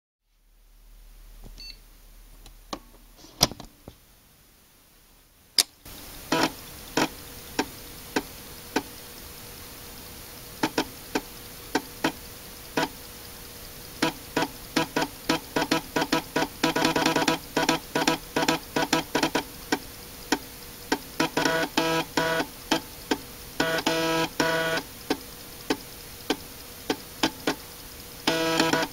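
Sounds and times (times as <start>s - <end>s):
floppy disk drive humming: 5.8s - 28.9s.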